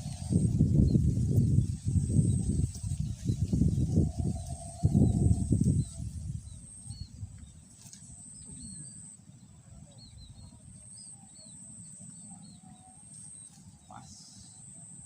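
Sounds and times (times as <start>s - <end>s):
high-pitched whine: 0.0s - 7.3s
low rumble of wind: 0.0s - 15.0s.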